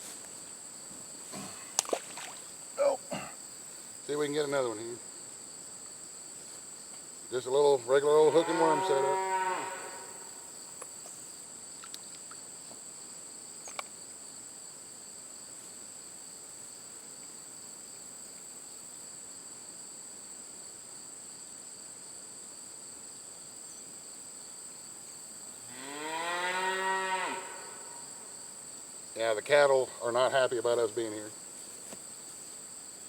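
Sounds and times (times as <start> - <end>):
insect chorus: 0.0 - 33.0
cow mooing: 8.2 - 10.3, 25.7 - 28.0.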